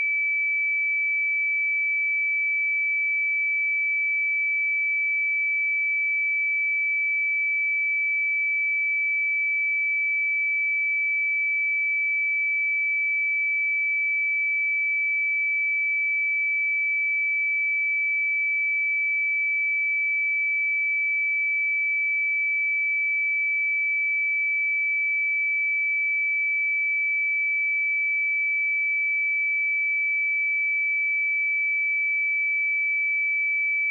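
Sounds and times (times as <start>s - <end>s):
high-pitched sine test tone: 28.7s - 33.9s.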